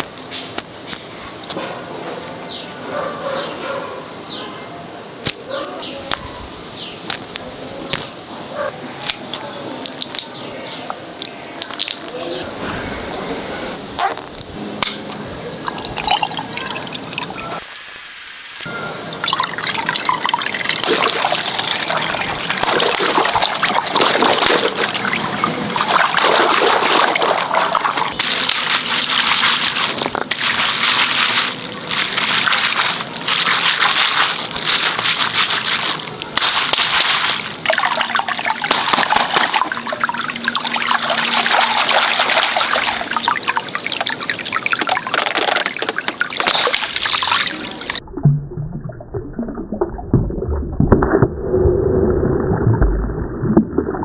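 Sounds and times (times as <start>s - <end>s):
water running and trickling: 9.0s - 13.2s, 15.6s - 17.6s, 19.1s - 48.0s.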